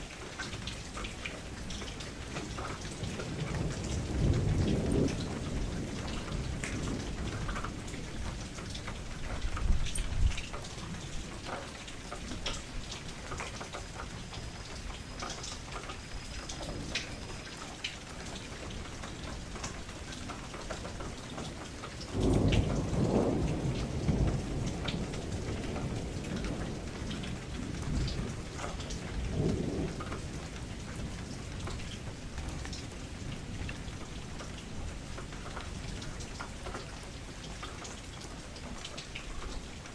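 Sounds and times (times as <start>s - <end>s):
steady rain falling: 0.0s - 39.9s
thunder rumbling: 2.6s - 8.8s, 22.1s - 34.9s.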